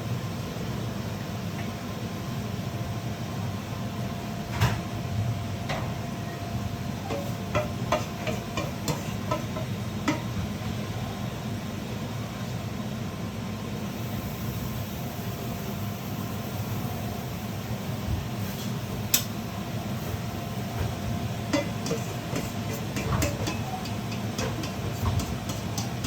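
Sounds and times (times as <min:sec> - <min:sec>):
steady low hum: 0:19.3 - 0:26.0
utensils clicking and knocking: 0:21.5 - 0:26.0.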